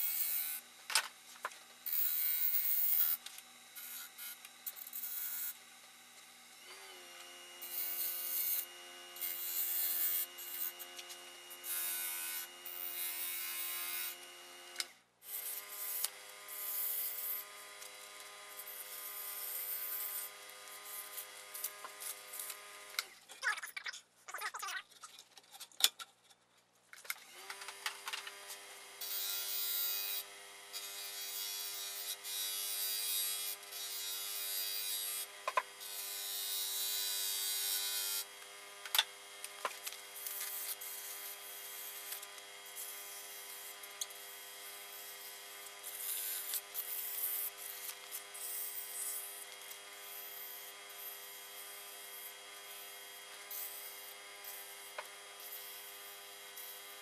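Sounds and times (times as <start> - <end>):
tool cutting spinning wood: 0.0 - 23.1.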